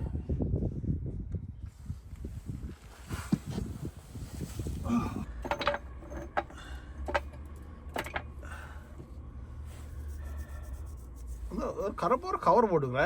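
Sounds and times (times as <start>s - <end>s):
tools clinking and knocking: 5.2s - 8.4s.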